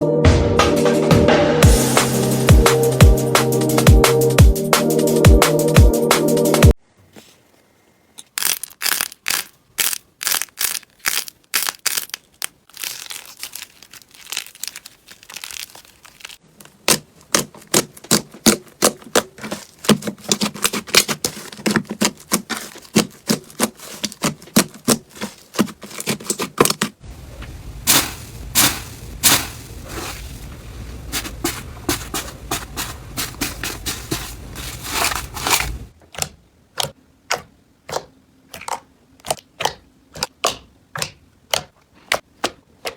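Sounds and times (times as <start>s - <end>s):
slime squishing and popping: 8.2s - 26.9s.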